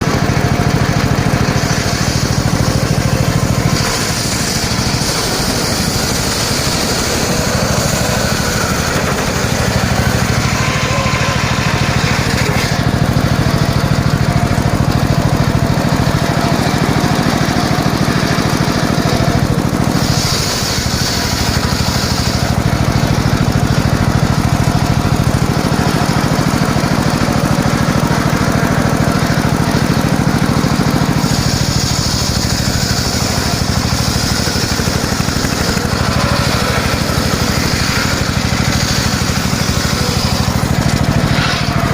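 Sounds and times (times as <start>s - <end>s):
sawmill engine drone: 0.0s - 41.9s
high saw hiss: 1.3s - 15.4s, 19.8s - 26.6s, 29.7s - 41.9s.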